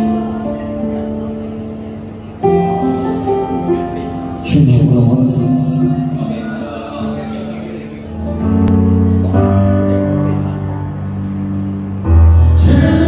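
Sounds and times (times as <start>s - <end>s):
man singing: 12.4s - 13.0s.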